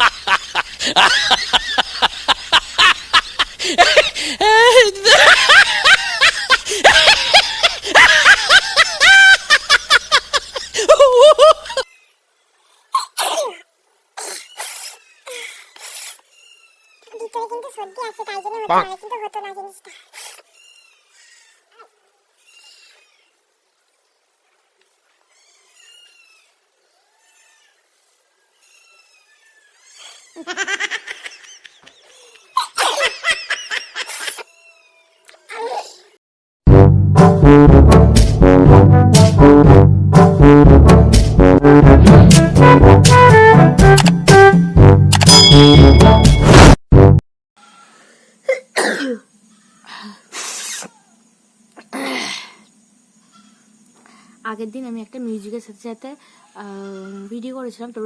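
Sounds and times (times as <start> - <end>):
high-pitched laughter: 0.0 - 12.0, 29.7 - 34.8
faint high-pitched calls: 20.5 - 23.5, 25.1 - 30.4.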